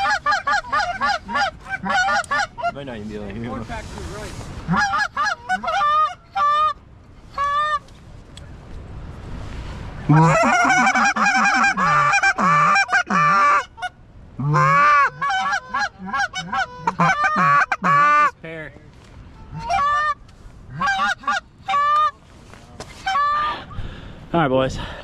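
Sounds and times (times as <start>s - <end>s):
goose honking: 0.0s - 2.8s, 4.6s - 7.8s, 10.0s - 18.4s, 19.4s - 22.1s.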